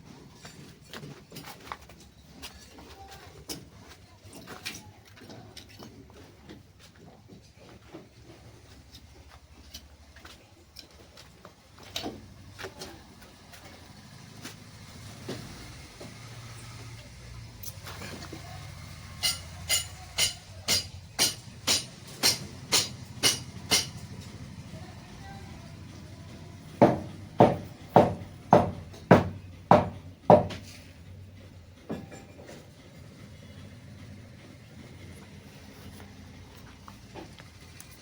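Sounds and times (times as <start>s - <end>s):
hammer blows: 19.2s - 24.1s.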